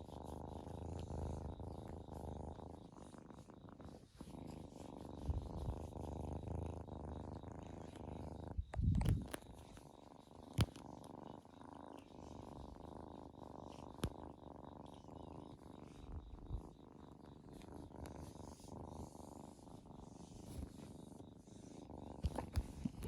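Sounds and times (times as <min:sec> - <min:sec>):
cat purring: 0:00.0 - 0:23.0.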